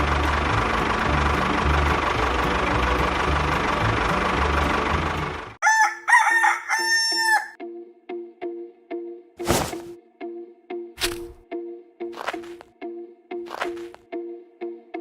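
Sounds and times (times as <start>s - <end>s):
cartoon engine rumble: 0.0s - 5.6s
rooster crowing: 5.6s - 7.6s.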